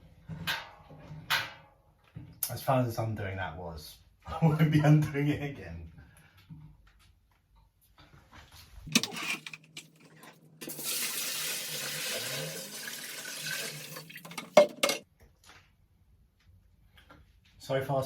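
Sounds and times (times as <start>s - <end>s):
tap water running into kettle: 8.9s - 15.0s.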